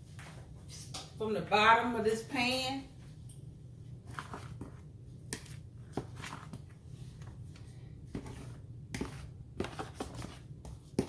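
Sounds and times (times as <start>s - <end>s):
spoon stirring and scraping batter: 0.0s - 1.0s, 3.4s - 11.0s.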